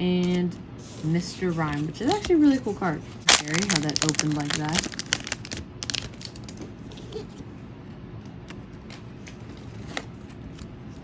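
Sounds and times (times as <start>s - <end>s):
trading cards clicking and rustling: 1.6s - 7.3s.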